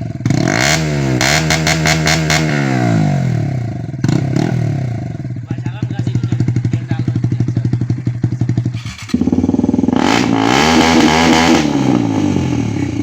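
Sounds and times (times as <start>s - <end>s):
motorcycle engine revving: 0.0s - 13.0s.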